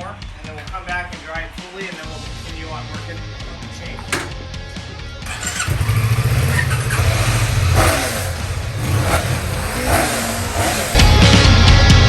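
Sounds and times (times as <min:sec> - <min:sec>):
motorcycle engine revving: 0:05.2 - 0:12.0.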